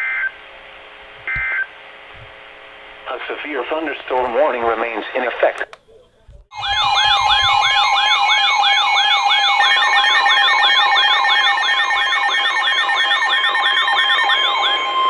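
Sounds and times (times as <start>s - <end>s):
emergency alert tone swoops: 6.5s - 15.0s
steady electronic tone: 6.5s - 15.0s.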